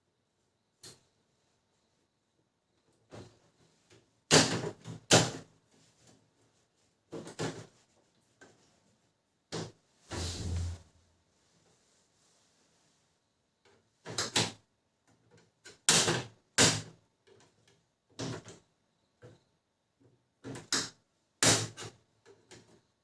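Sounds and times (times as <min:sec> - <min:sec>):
printer parts knocking and clicking: 0:04.3 - 0:05.5, 0:15.4 - 0:19.4, 0:20.4 - 0:22.8.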